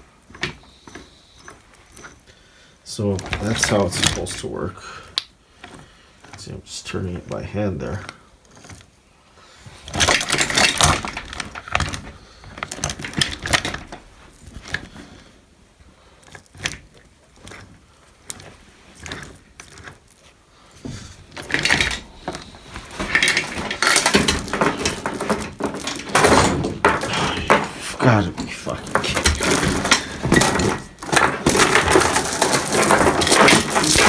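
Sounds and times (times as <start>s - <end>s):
metal chain clinking and rattling: 0.2s - 2.3s, 3.0s - 4.6s, 9.8s - 15.3s, 16.2s - 34.0s.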